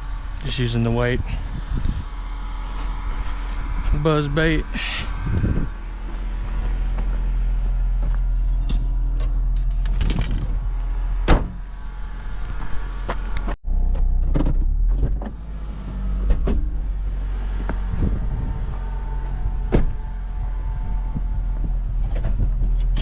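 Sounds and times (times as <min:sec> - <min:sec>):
vehicle engine rumbling: 0:00.0 - 0:23.0.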